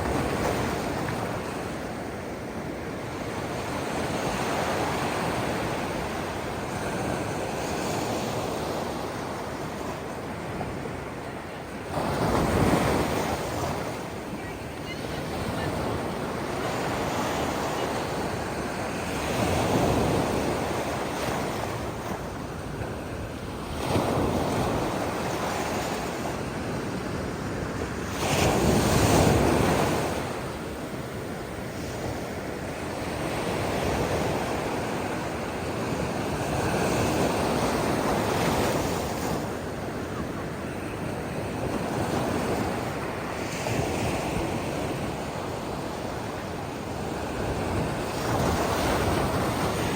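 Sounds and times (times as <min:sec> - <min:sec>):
waves breaking on shore: 0:00.0 - 0:49.9.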